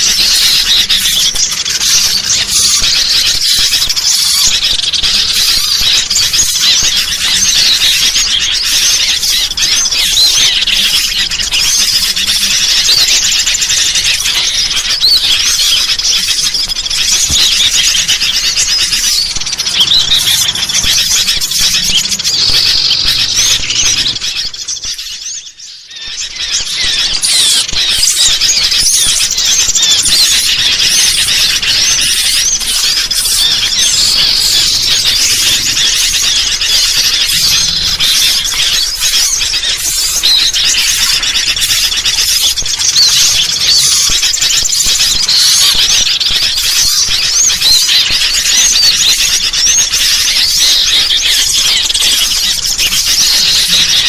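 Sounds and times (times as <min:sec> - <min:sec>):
high-pitched bird calls: 0:00.0 - 0:54.0.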